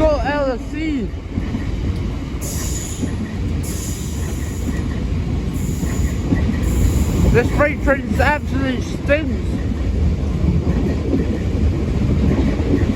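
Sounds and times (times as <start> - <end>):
freight train rumbling: 0.0 - 12.9
high wheel squeal: 2.4 - 4.9.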